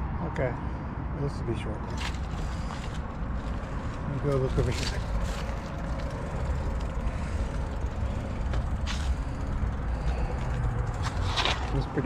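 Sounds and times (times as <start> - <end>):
road traffic rumble: 0.0 - 12.0.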